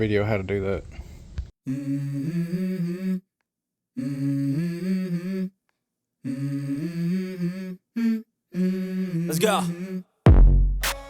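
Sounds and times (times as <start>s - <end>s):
hummed vocal melody: 1.6s - 3.3s, 4.0s - 5.6s, 6.2s - 10.2s.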